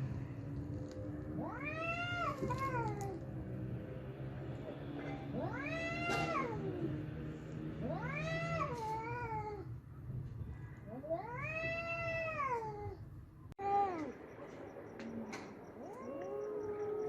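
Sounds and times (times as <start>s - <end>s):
cat growling: 1.3s - 3.3s, 5.3s - 7.2s, 7.8s - 9.7s, 10.8s - 13.0s
cats yowling: 1.3s - 3.3s, 5.3s - 7.1s, 7.8s - 9.8s, 10.8s - 13.0s, 15.4s - 17.0s.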